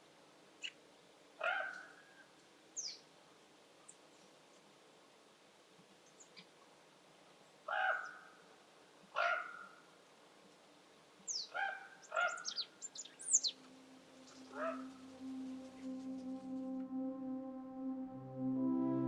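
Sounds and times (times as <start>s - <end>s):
birds calling: 11.3s - 16.0s
high falling bird notes: 13.3s - 19.0s
soft music: 13.5s - 19.0s.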